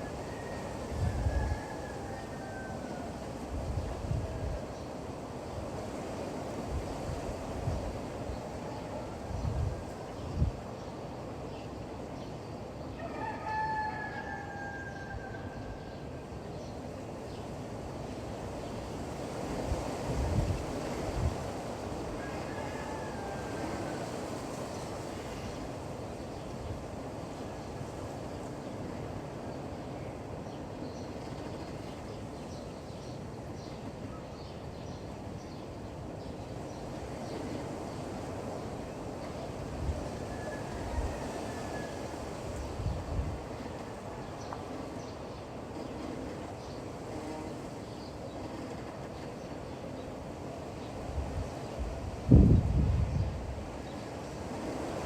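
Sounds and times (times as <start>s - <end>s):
rooster crowing: 0.0s - 3.2s, 13.0s - 16.1s, 22.2s - 24.2s, 40.1s - 42.3s
wind noise: 3.4s - 4.8s, 9.2s - 10.7s, 19.0s - 22.2s, 39.6s - 43.8s, 51.0s - 55.0s
wind rumble: 51.1s - 53.8s.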